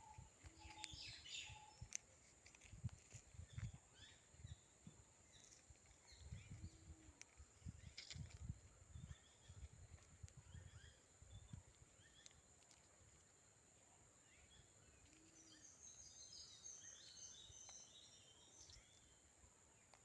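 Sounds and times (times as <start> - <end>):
faint high bird chirps: 0.0 - 2.0, 14.2 - 19.2.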